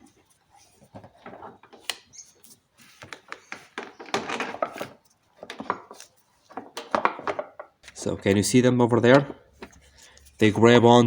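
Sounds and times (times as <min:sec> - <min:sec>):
plastic parts scraping and rubbing: 0:00.0 - 0:08.0
plastic parts clicking and knocking: 0:03.0 - 0:08.4.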